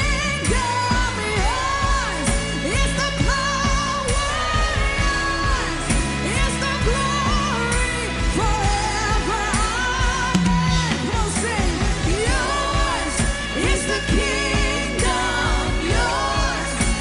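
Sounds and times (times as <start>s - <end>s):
live worship band: 0.0s - 17.0s
drum beat: 10.4s - 17.0s.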